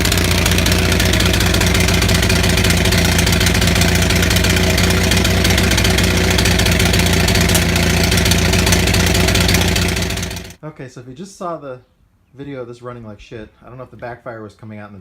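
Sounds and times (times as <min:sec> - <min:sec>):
engine misfire pop: 0:00.0 - 0:10.6
generator engine running raggedly: 0:00.0 - 0:10.6.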